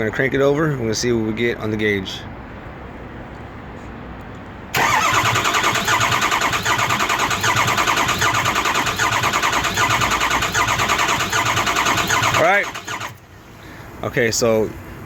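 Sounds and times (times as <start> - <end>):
diesel engine cranking on starter: 4.7 - 13.8.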